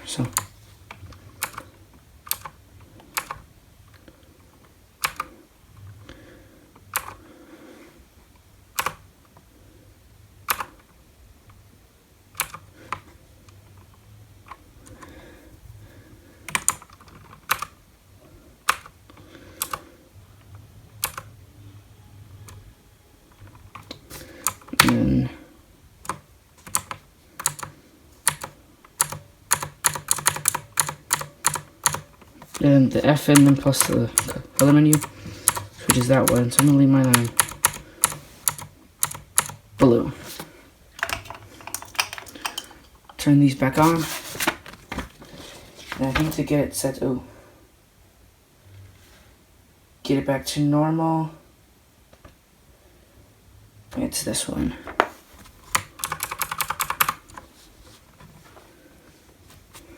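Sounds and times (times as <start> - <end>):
clicky keyboard keys pressed: 16.5 - 17.8, 26.0 - 32.6, 33.3 - 39.6, 55.7 - 57.4.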